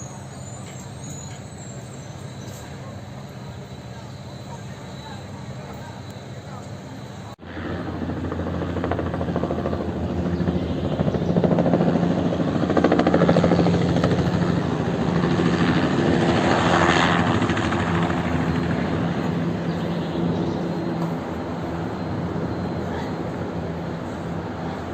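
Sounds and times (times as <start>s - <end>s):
helicopter rotor beating: 0.0s - 24.9s.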